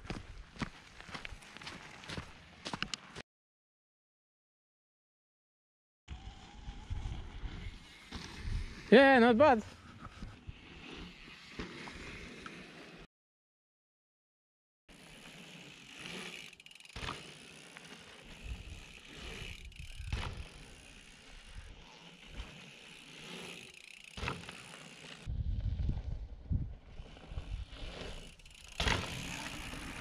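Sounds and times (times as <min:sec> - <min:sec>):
bike tyres on dirt trail: 0:00.0 - 0:03.2, 0:06.1 - 0:13.1, 0:14.9 - 0:30.0
bike rattling and knocking: 0:23.5 - 0:25.3, 0:28.2 - 0:30.0
low rumbling wind gusts: 0:25.3 - 0:27.9.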